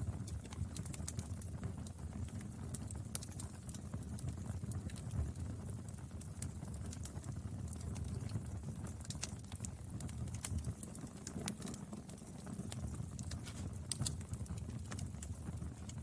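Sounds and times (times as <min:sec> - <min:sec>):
wood fire crackling: 0:00.0 - 0:16.0.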